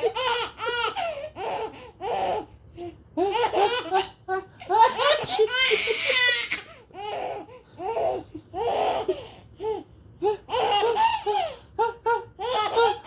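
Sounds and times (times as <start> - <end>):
baby giggling: 4.7 - 6.6.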